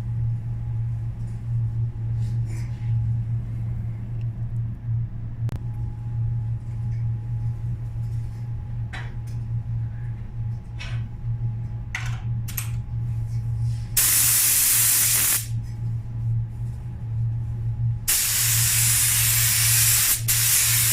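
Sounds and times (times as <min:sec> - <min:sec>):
steady low hum: 0:00.0 - 0:20.9
paint spray gun hissing: 0:14.0 - 0:15.5, 0:18.1 - 0:20.9.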